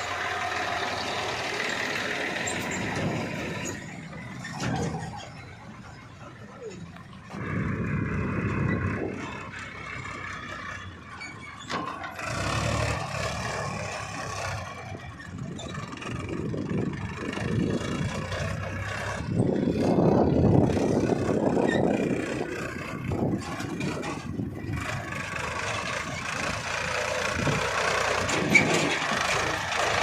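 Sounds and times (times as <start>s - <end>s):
backhoe diesel engine working: 0.0s - 30.0s.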